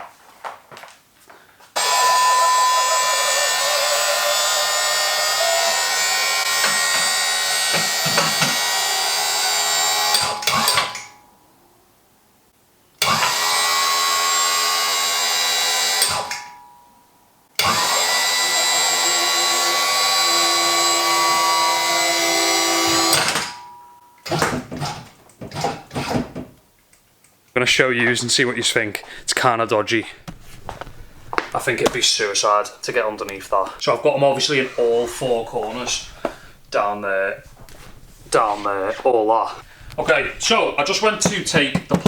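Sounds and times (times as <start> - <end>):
electric hydraulic pump running: 1.8 - 11.1, 13.0 - 16.6, 17.6 - 26.4
short knocks: 41.1 - 42.0.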